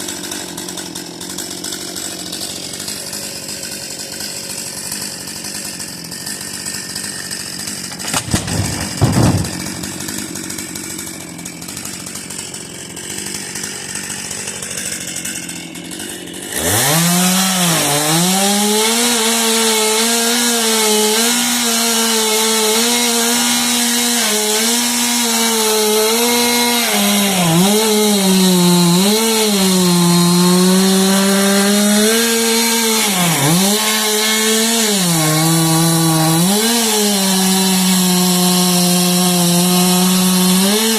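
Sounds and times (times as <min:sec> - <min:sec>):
chainsaw cutting wood: 0:00.0 - 0:40.9
knocks: 0:07.9 - 0:10.6.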